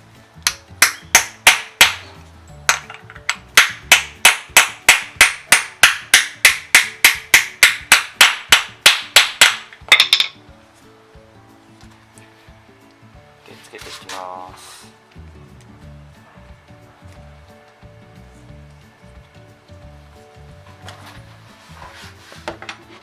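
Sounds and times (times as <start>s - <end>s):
hammer striking metal: 0.4s - 10.4s.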